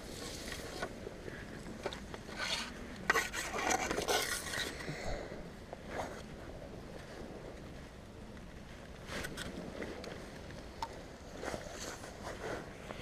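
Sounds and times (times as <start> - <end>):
rubbing and scraping: 2.3 - 4.8.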